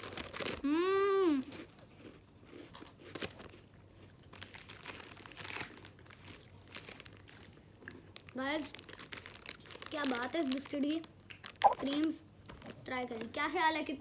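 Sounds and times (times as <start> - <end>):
wrapper crinkling: 0.0 - 0.7, 4.3 - 13.4
biscuits crunching: 0.0 - 13.4
vocal exclamation: 11.6 - 11.9.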